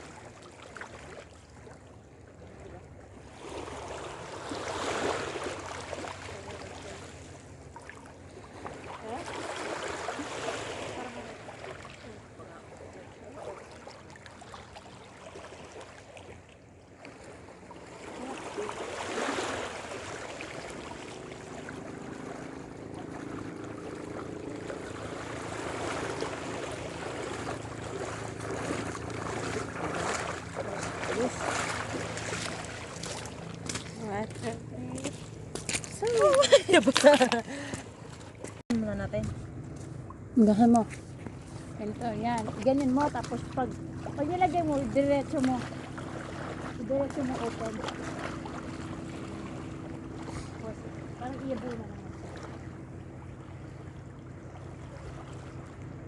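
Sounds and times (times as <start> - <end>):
seawater washing and splashing: 0.0 - 56.0.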